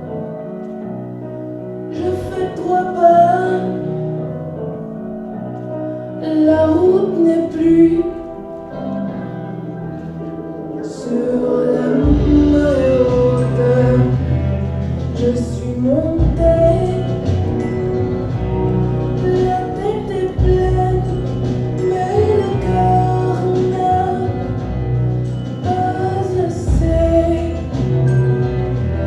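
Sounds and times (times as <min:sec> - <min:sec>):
gliding melodic line: 0:00.0 - 0:29.0
deep bass: 0:11.3 - 0:29.0.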